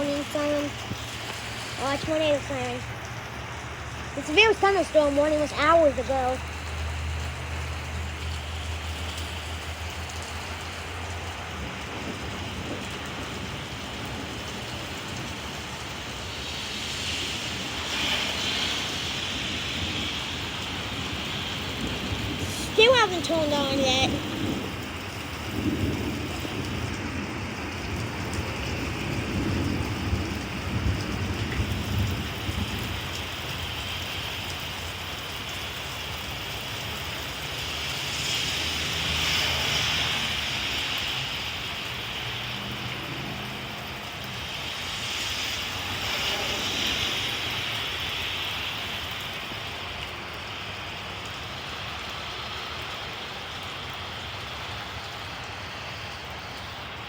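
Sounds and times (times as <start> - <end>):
heavy steady rain: 0.0 - 57.0
low rumble of thunder: 7.8 - 37.6.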